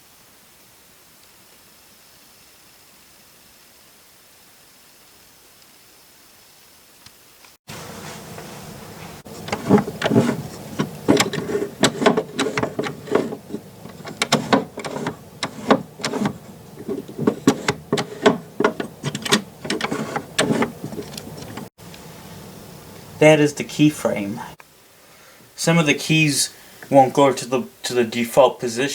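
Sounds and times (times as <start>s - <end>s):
wooden key mechanism clicking: 9.3s - 21.7s.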